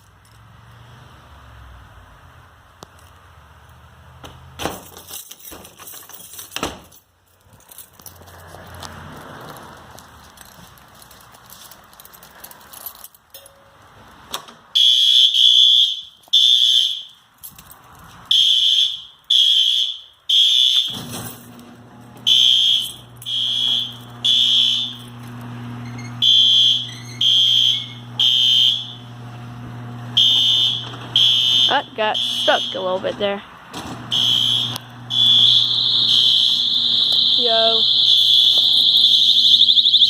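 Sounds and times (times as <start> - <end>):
fire alarm beeping: 14.8 - 17.2, 18.3 - 21.1, 22.2 - 25.2, 25.8 - 29.2, 30.2 - 33.0, 34.1 - 40.0.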